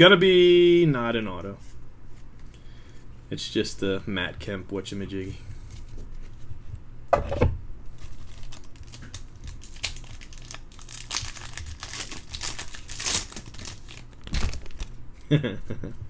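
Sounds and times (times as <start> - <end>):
foil wrapper crinkling and tearing: 7.9 - 15.0.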